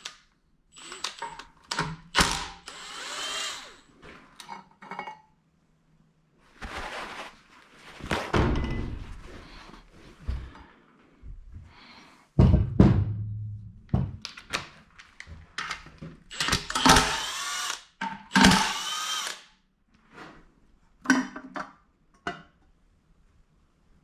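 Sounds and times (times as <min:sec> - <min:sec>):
cordless power driver spinning bolts: 0:00.8 - 0:01.5.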